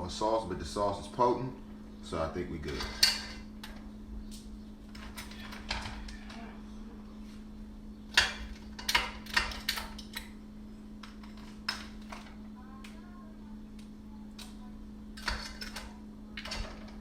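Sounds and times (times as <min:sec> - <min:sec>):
steady low hum: 0:00.0 - 0:17.0
cooking pot and utensils clattering: 0:02.6 - 0:03.8, 0:04.9 - 0:06.5, 0:08.1 - 0:10.4, 0:11.0 - 0:12.4, 0:15.2 - 0:17.0.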